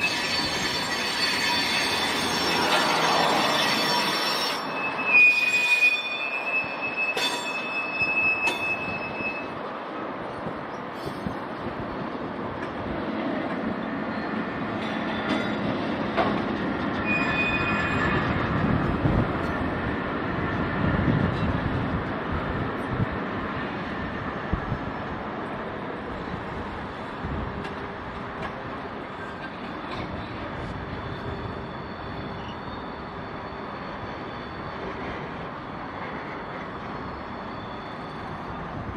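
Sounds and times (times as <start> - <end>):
high-pitched wheel squeal: 0.0 - 9.6, 16.9 - 18.6, 30.6 - 35.3
steel wheels rumbling on rails: 0.0 - 38.9.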